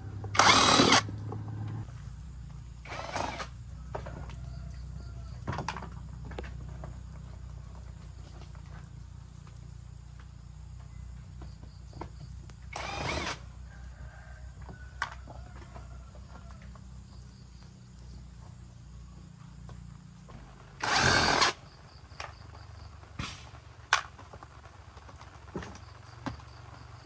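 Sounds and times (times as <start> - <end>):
power tool running: 0.0 - 1.8, 2.8 - 3.5, 12.7 - 13.5, 20.7 - 21.6.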